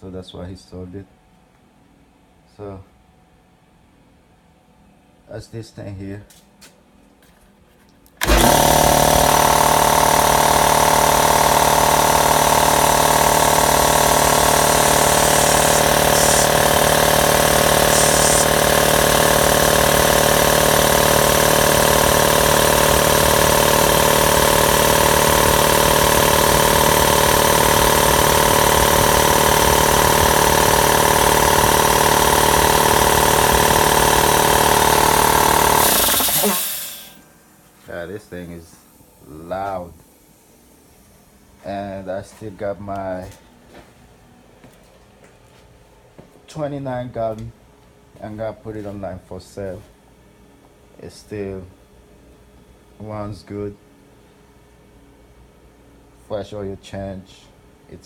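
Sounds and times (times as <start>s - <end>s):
air compressor running: 8.2s - 46.3s.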